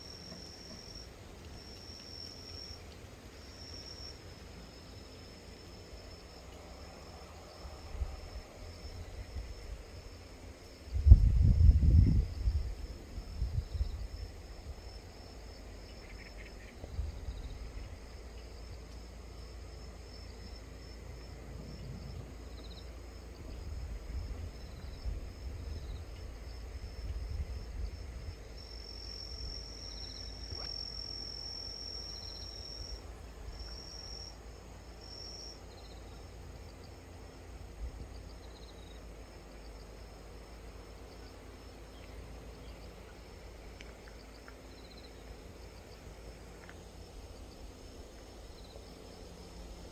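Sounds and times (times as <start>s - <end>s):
insects trilling: 0.0s - 49.9s
low wind rumble: 4.0s - 30.4s.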